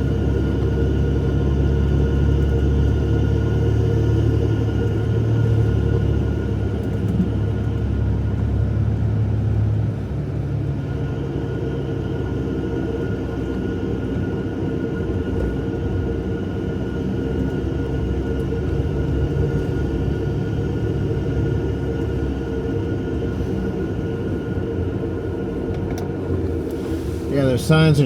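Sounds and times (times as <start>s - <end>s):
car engine and road drone: 0.0s - 28.0s
faint steady whine: 10.6s - 28.0s.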